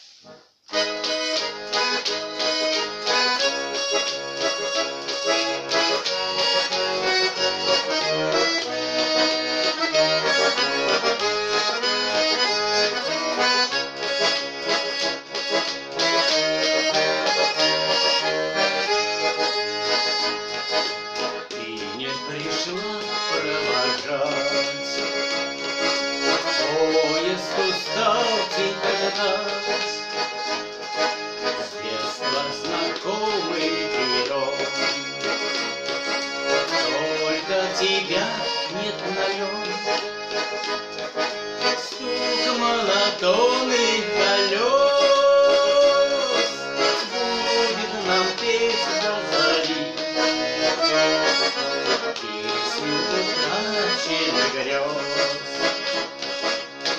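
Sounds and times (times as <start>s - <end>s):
button accordion playing melody: 0.0s - 56.9s.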